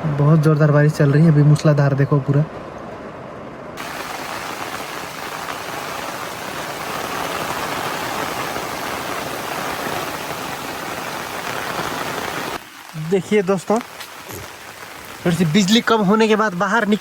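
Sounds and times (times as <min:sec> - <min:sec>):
heavy rain pouring: 0:03.8 - 0:17.0.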